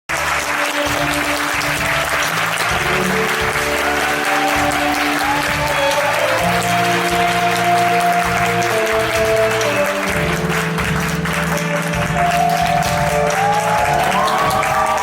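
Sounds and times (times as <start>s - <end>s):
audience applauding: 0.1s - 15.0s
instrumental band music: 0.1s - 15.0s.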